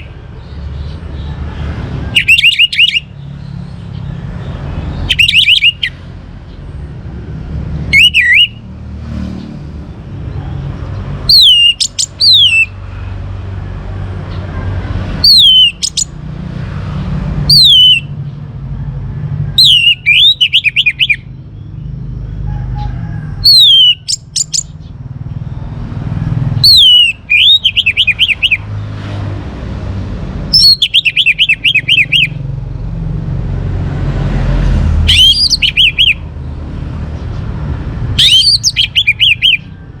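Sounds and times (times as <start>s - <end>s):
thrush singing: 7.6s - 8.7s, 25.8s - 28.9s, 30.5s - 33.1s, 38.1s - 39.7s.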